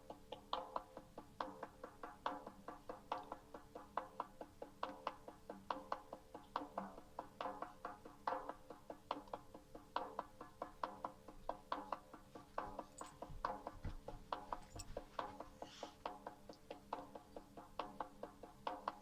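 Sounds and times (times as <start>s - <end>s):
frame drum beaten steadily: 0.0s - 19.0s.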